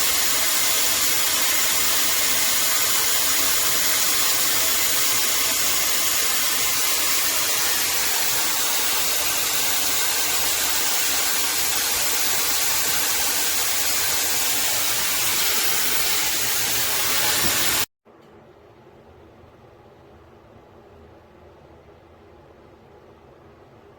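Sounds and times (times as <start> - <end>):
hair dryer blowing: 0.0 - 17.9.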